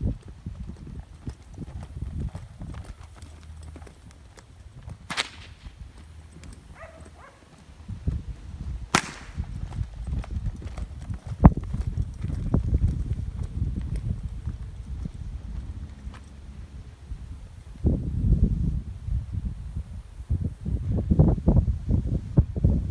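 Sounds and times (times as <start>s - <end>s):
hoofbeats on soft ground: 0.0s - 20.2s
loud snap: 5.1s - 5.6s, 9.0s - 9.4s
sharp cracks: 5.1s - 5.8s, 8.9s - 9.7s.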